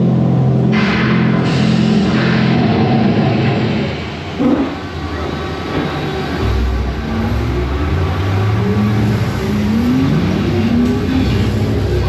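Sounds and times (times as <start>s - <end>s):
ride vehicle deep rumble: 4.4s - 12.0s
rising tone: 6.2s - 12.0s.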